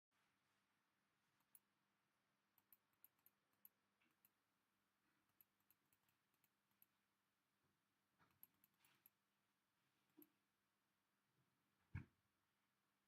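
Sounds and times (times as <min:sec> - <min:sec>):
faint irregular clicks: 0:01.4 - 0:01.7, 0:02.5 - 0:07.1, 0:08.1 - 0:09.3, 0:10.0 - 0:10.4.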